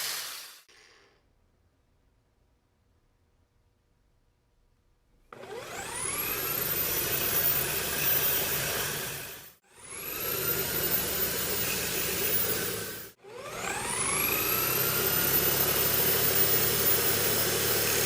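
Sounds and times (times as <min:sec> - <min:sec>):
electric drill whining: 0:05.3 - 0:18.0.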